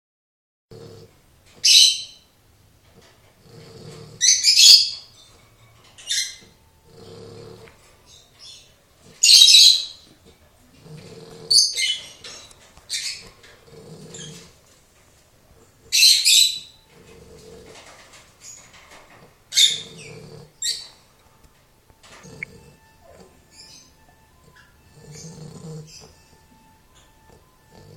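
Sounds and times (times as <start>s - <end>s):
person snoring with whistling hiss: 6.8s - 7.8s, 19.8s - 20.8s, 22.2s - 26.4s, 27.6s - 27.9s.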